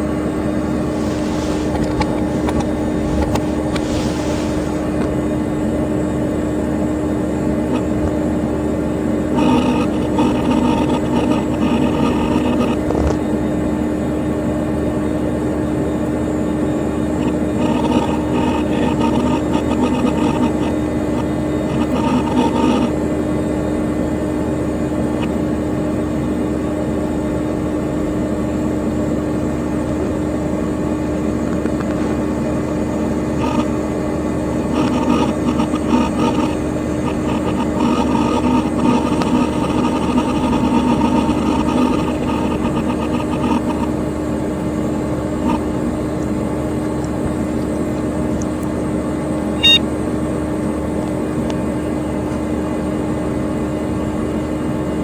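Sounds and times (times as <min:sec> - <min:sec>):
hard drive activity: 0:00.0 - 0:06.0, 0:07.1 - 0:13.6, 0:16.0 - 0:28.5, 0:29.4 - 0:50.3
computer cooling fan hum: 0:00.0 - 0:55.0.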